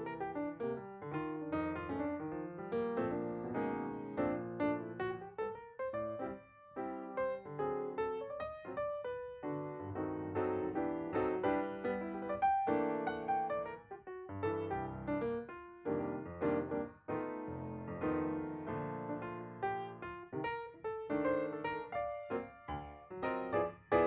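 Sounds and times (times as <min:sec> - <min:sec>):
solo piano melody with chords: 0:00.0 - 0:24.0.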